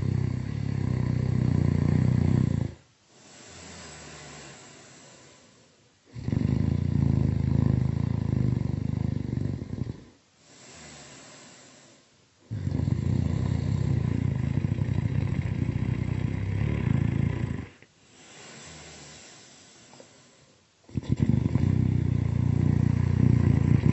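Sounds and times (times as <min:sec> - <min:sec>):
rattling snoring: 0:00.0 - 0:02.8, 0:06.1 - 0:10.1, 0:12.5 - 0:20.1, 0:20.9 - 0:23.9
quiet breath: 0:00.0 - 0:23.9.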